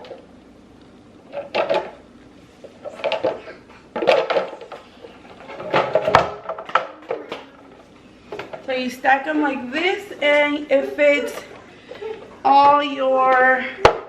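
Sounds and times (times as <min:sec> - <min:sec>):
plastic organizers clattering: 0:01.3 - 0:02.0, 0:02.8 - 0:07.6.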